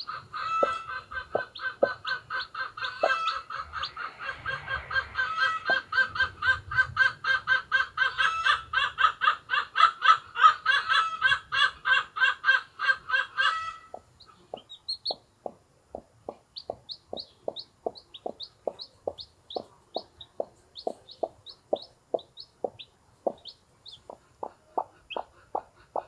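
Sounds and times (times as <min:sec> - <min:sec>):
chicks peeping: 0:00.0 - 0:26.0
hen clucking: 0:00.0 - 0:26.0.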